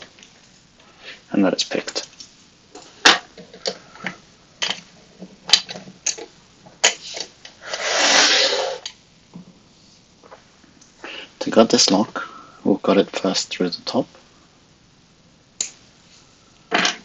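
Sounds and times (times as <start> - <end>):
metal scrape: 6.8 - 8.9.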